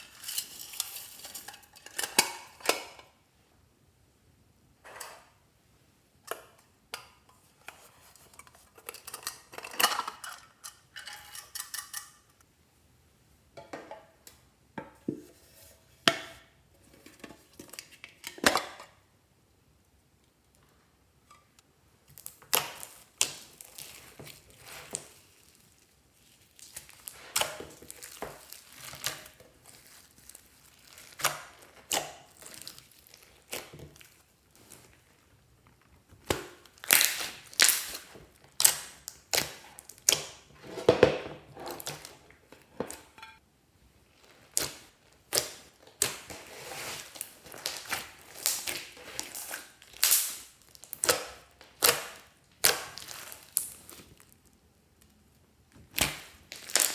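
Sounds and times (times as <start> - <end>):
slime popping and crackling: 36.1 - 40.4, 44.2 - 54.4, 55.9 - 56.9.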